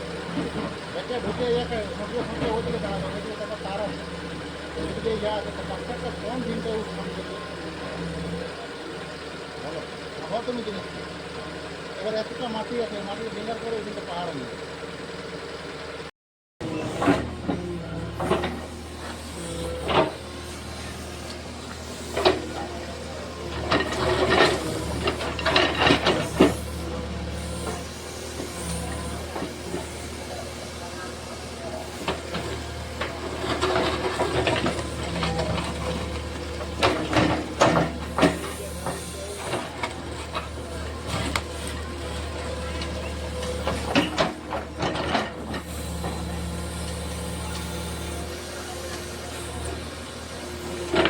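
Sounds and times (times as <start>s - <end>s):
diesel engine running: 0.0s - 51.0s
soil crunching and scraping: 18.2s - 49.7s.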